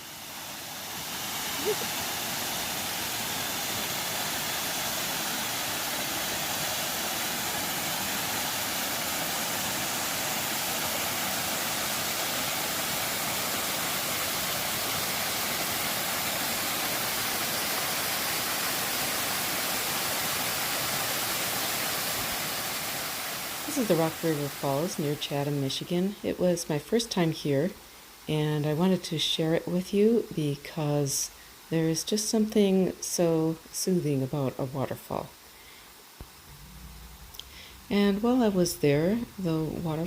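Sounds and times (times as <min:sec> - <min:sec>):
waterfall rushing: 0:00.0 - 0:25.2, 0:36.3 - 0:40.0.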